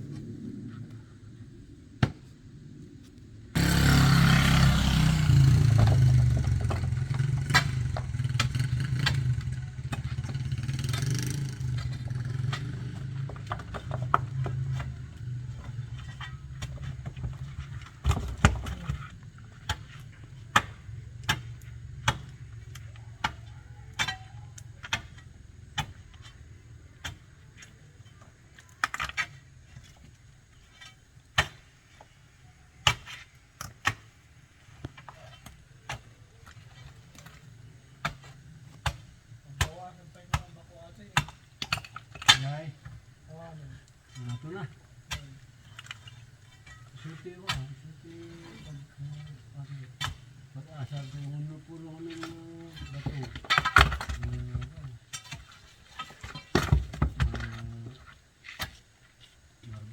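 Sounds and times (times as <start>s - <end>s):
vehicle engine starting and running: 3.6s - 15.7s.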